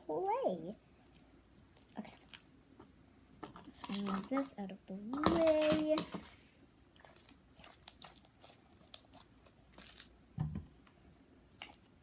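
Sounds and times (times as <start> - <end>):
soft thump: 10.4 - 10.7.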